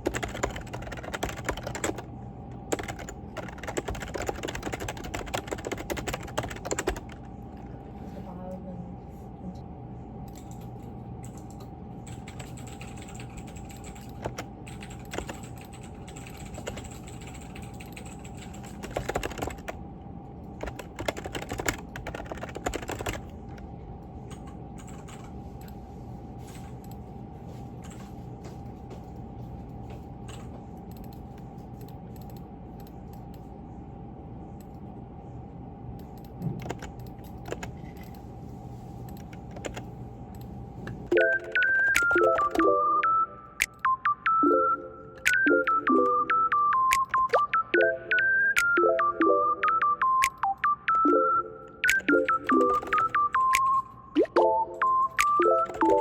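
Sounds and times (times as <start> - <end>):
computer keyboard typing: 0.0 - 7.6, 10.3 - 19.8, 20.5 - 25.8, 30.3 - 33.4, 36.0 - 38.2, 39.1 - 40.5, 41.1 - 56.0
low room hum: 0.0 - 56.0.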